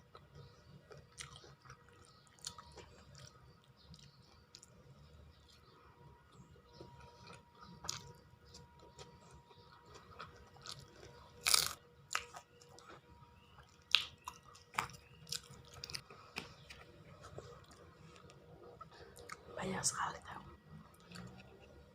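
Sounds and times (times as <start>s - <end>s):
person chewing crunchy food: 0.0s - 19.6s, 20.8s - 21.9s.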